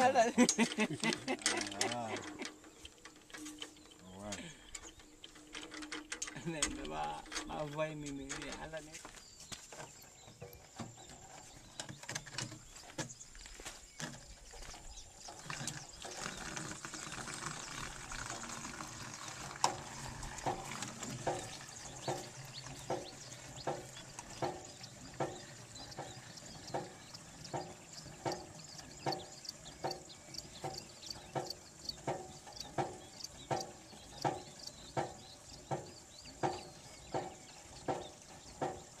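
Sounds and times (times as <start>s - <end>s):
hand water pump strokes: 0.0s - 8.9s, 14.0s - 39.0s
running water: 14.6s - 39.0s.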